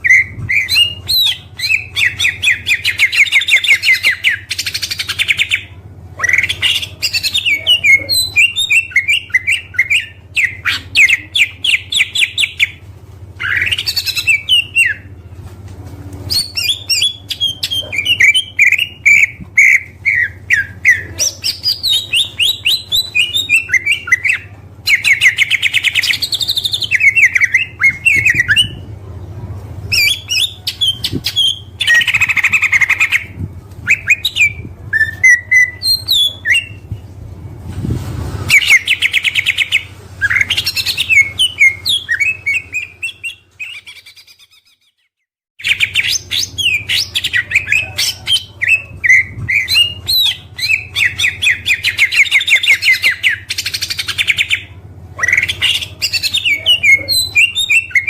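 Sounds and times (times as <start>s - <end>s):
bird singing whistled phrases: 0.0s - 12.8s, 16.3s - 28.8s, 33.9s - 36.9s, 45.6s - 58.0s
steady low hum: 0.0s - 43.6s.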